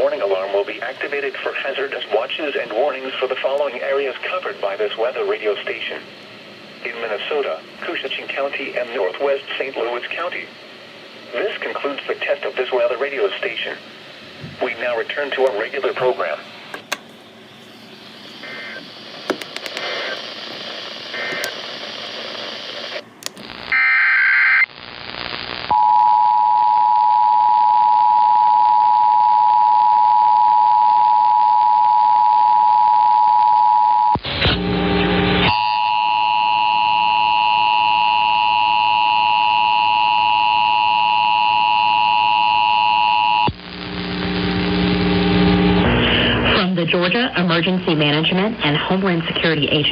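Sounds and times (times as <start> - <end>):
faint radio audio: 0.0 - 6.2, 6.8 - 23.7, 43.7 - 49.9.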